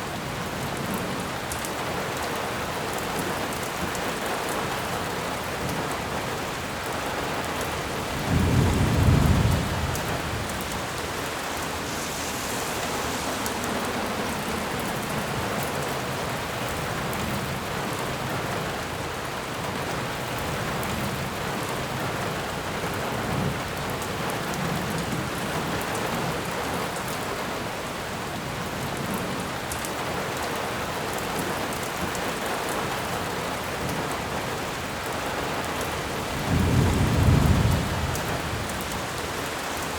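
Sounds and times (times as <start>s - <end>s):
steady rain: 0.0s - 39.9s
thunder rumbling: 7.2s - 18.8s, 36.3s - 39.4s.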